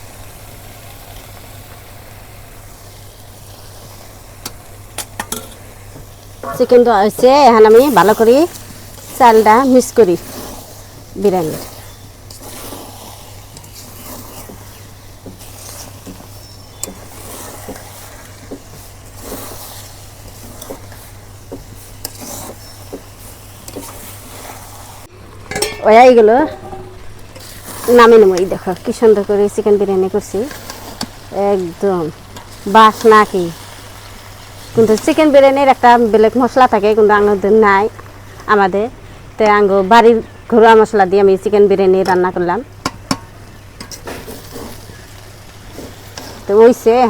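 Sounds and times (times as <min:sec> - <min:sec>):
pot hissing on stove: 0:00.0 - 0:47.0
spoon scraping in pot: 0:08.0 - 0:24.7
low hum: 0:25.1 - 0:27.4
spoon knocking against pot: 0:25.5 - 0:27.2.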